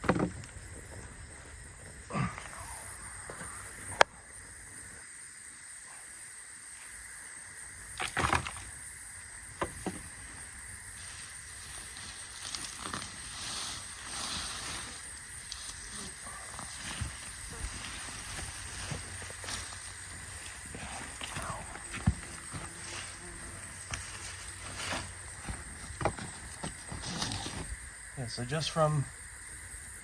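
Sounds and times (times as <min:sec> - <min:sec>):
rustling and scraping in soil: 0:07.9 - 0:29.0.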